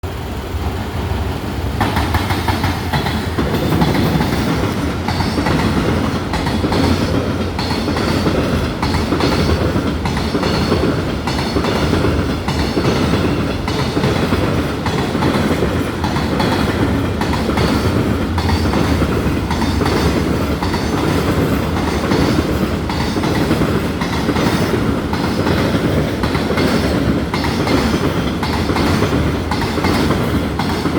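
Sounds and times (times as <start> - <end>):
freight train passing: 0.0 - 30.9
wheels clacking over rail joints: 1.1 - 30.9.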